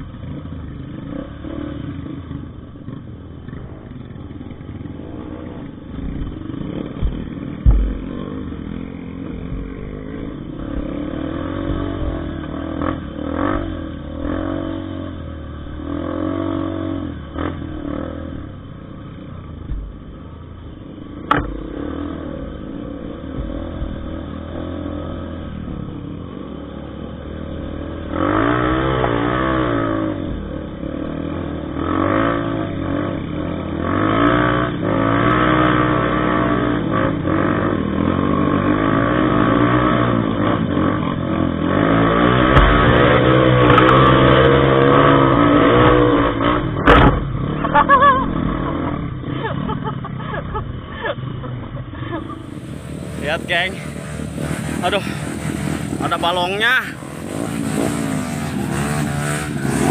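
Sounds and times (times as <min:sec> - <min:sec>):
motorcycle engine revving: 0:00.0 - 0:59.9
sharp knocks: 0:06.9 - 0:08.3, 0:21.3 - 0:21.7, 0:42.5 - 0:43.1.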